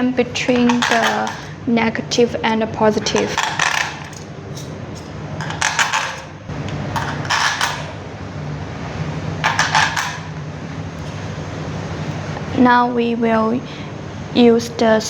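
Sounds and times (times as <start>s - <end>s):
metal bars clinking: 0.5s - 1.5s, 3.0s - 7.9s.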